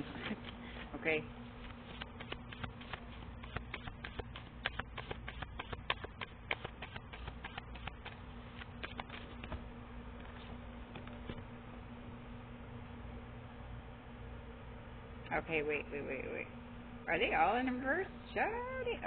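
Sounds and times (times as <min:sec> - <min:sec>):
cards being shuffled: 0:01.5 - 0:11.5.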